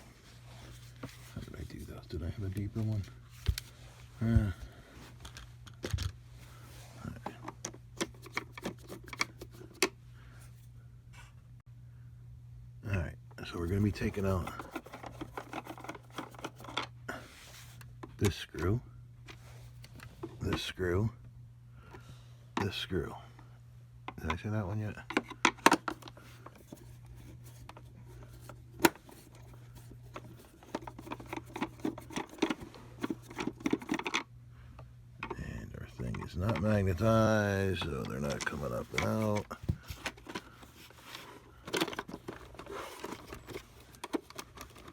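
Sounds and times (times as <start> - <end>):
steady low hum: 0.0 - 44.9.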